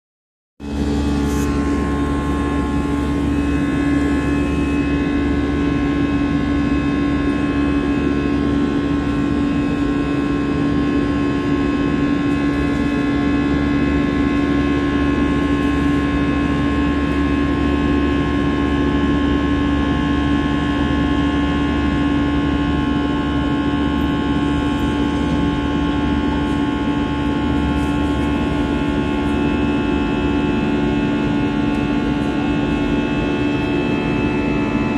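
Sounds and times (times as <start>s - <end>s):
motor humming: 0.7s - 6.2s.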